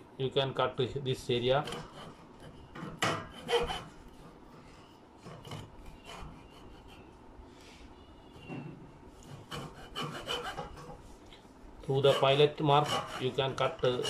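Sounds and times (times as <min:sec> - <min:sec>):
hacksaw cutting wood: 0:01.6 - 0:04.0, 0:05.2 - 0:07.0, 0:09.2 - 0:11.0, 0:12.0 - 0:14.0.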